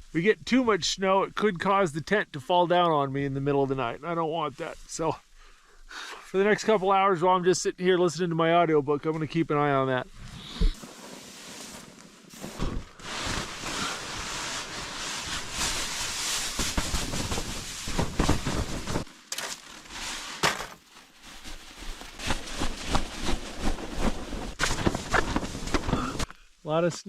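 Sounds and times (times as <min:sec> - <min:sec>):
wind hiss: 0:10.1 - 0:19.1
tent fabric rustling and snapping: 0:10.2 - 0:26.3.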